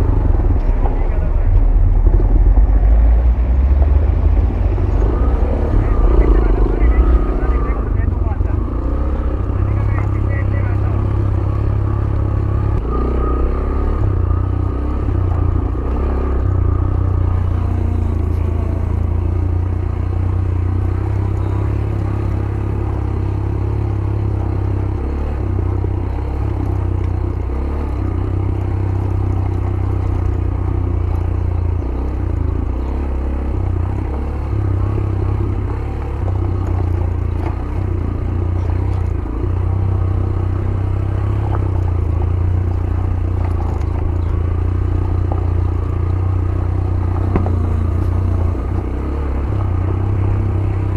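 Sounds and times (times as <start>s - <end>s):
motorcycle engine rumbling: 0.0s - 50.9s
motorcycle rattling over dirt: 0.0s - 50.9s.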